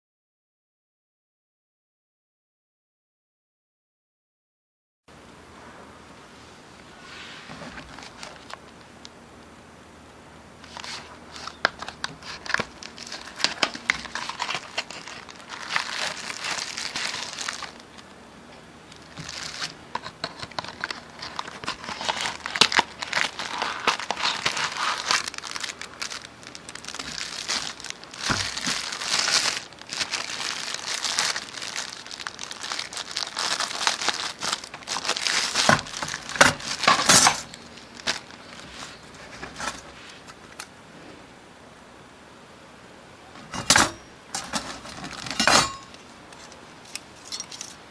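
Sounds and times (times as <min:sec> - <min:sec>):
packaging being crumpled: 0:07.6 - 0:08.9, 0:10.6 - 0:18.2, 0:18.9 - 0:40.7, 0:44.5 - 0:47.8.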